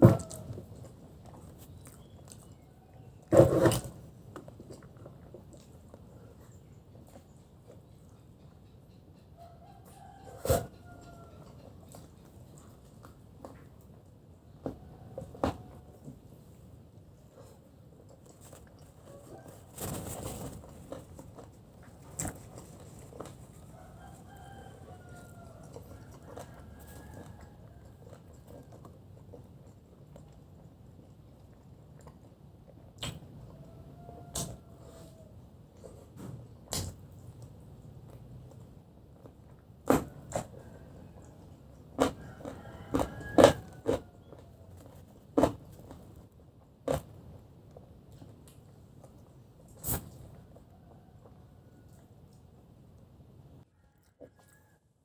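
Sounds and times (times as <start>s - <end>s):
rooster crowing faintly: 0.0s - 0.7s, 9.4s - 11.7s, 19.0s - 20.5s, 23.2s - 28.7s, 33.4s - 35.5s, 39.9s - 45.1s, 53.6s - 55.0s
crunching fried chicken: 0.0s - 6.3s, 17.4s - 52.5s.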